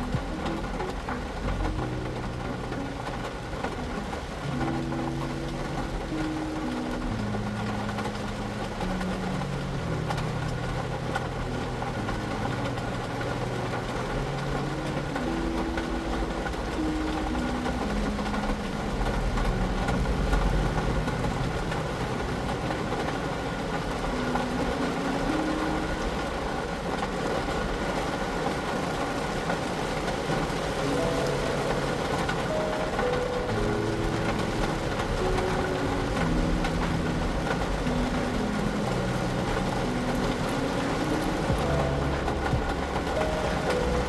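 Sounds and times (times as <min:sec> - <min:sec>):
slow soft melody: 0:00.0 - 0:44.0
vehicle engines running: 0:00.0 - 0:44.0
low rumble: 0:33.2 - 0:44.0.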